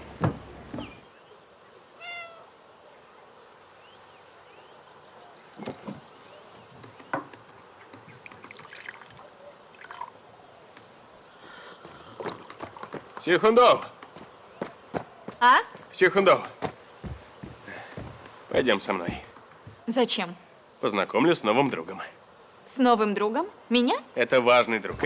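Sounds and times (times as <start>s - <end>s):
small birds chirping: 0.0s - 25.0s
soft knocks: 0.1s - 1.0s, 11.9s - 19.9s.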